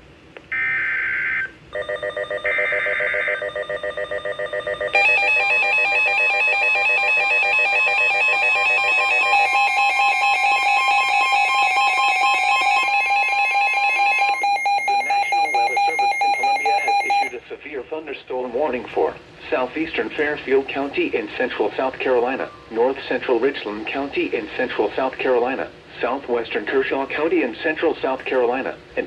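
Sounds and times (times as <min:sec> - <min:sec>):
steady high tone: 0:01.8 - 0:17.4.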